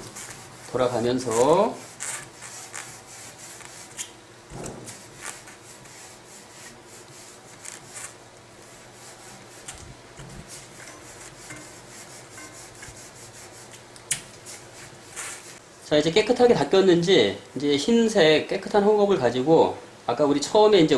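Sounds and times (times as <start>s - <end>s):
cloth scrubbing brake rotor: 0.0s - 4.1s, 4.9s - 13.7s.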